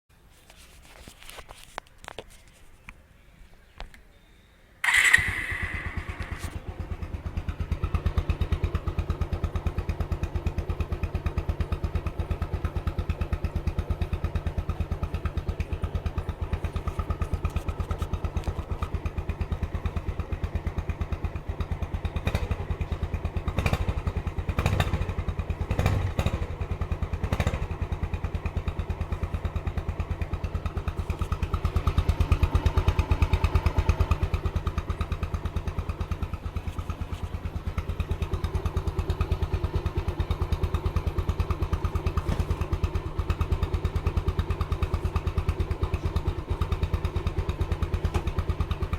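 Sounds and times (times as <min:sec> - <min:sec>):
short sharp sounds: 0:04.8 - 0:07.0
motorcycle engine starting and idling: 0:04.8 - 0:48.9.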